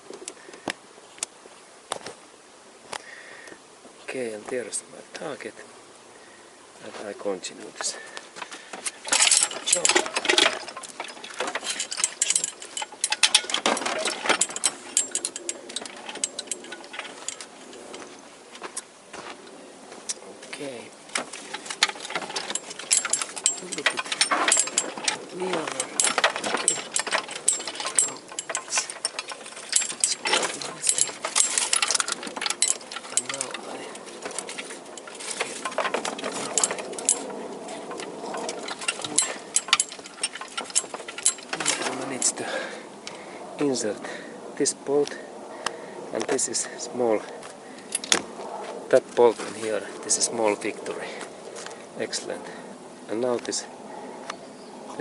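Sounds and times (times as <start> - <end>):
hand tools and bolts clinking: 8.4 - 18.9, 20.0 - 43.8, 45.0 - 48.3.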